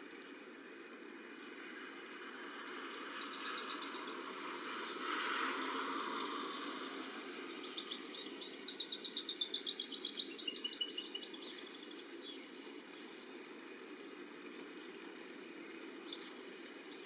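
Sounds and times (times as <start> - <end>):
small songbird twittering: 7.5 - 13.1.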